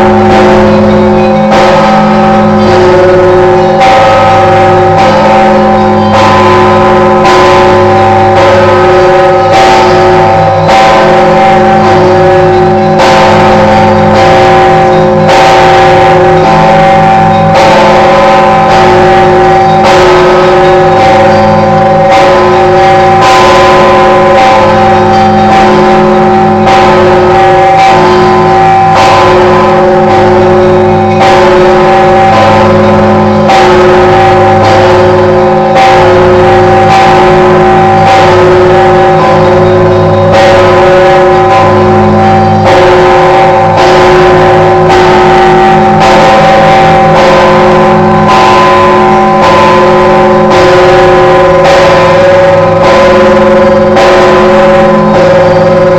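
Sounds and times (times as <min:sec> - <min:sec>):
heavy church bell ringing: 0:00.0 - 0:55.9.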